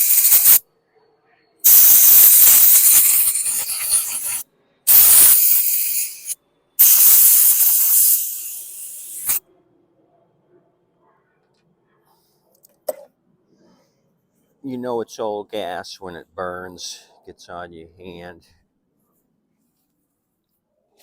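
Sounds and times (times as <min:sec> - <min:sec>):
pressurised spray hissing: 0:00.0 - 0:00.6, 0:01.6 - 0:09.4.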